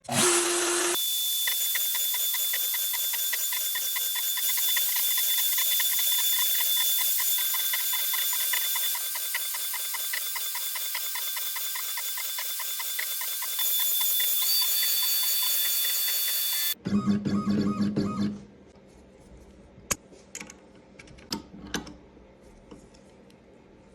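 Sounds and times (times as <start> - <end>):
cnc router cutting wood: 0.1 - 16.8.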